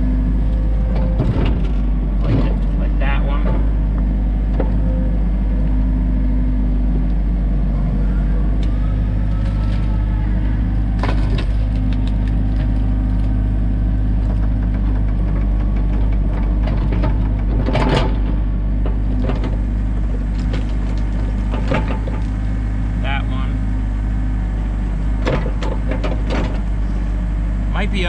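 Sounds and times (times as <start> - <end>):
excavator diesel engine running: 0.0 - 28.0
rocks and soil clunking under bucket: 10.9 - 22.9.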